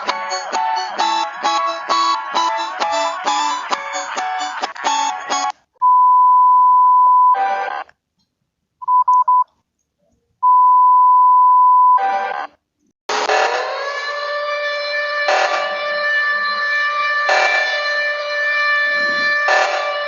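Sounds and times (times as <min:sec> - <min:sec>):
plucked guitar music: 0:00.0 - 0:05.5.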